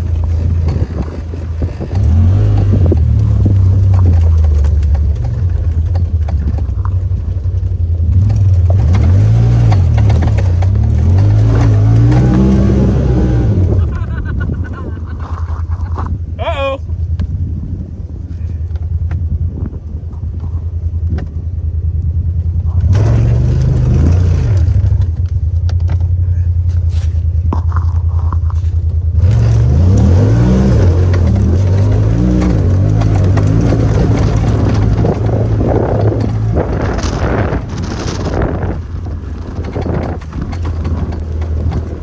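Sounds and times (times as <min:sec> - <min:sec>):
side-by-side engine running: 0:00.0 - 0:42.0.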